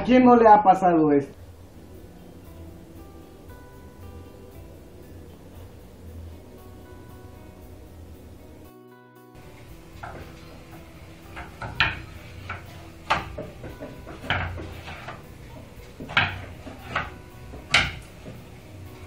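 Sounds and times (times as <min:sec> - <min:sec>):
sharp knocks and clatters: 0:09.4 - 0:19.0.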